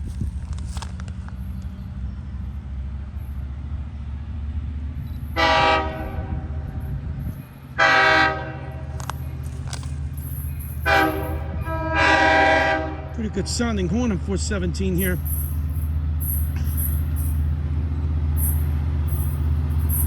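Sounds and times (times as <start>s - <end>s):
diesel locomotive running: 0.0s - 20.0s
train air horn blasts: 5.4s - 6.7s, 7.8s - 8.9s, 10.8s - 13.4s.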